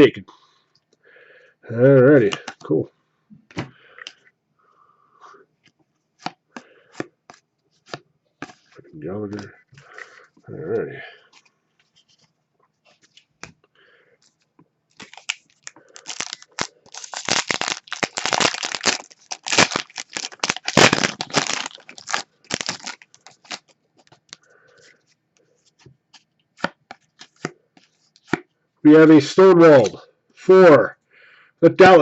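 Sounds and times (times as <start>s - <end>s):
foil wrapper tearing and crinkling: 14.9s - 24.4s.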